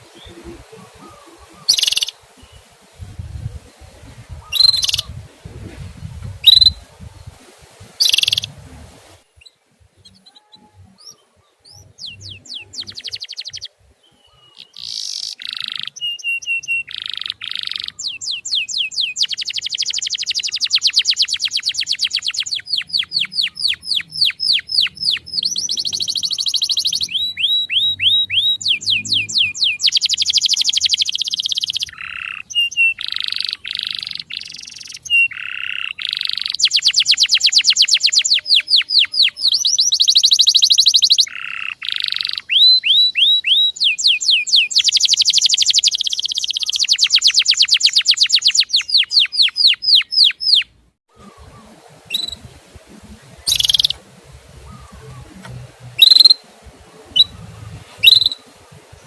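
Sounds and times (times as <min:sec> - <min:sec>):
fast high bird trills: 0:00.0 - 0:02.2, 0:04.3 - 0:05.2, 0:06.4 - 0:06.9, 0:08.0 - 0:08.5, 0:53.5 - 0:54.0, 0:56.0 - 0:56.4, 0:57.1 - 0:58.5
sharp songbird calls: 0:00.0 - 0:02.7, 0:03.7 - 0:05.3, 0:06.0 - 0:07.3, 0:08.0 - 0:08.6, 0:09.3 - 0:59.0.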